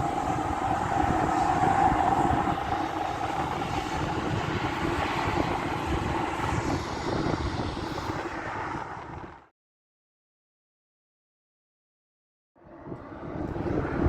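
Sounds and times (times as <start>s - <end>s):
jet engines whining: 0.0s - 9.0s
wind buffeting microphone: 0.0s - 9.5s, 12.6s - 14.0s.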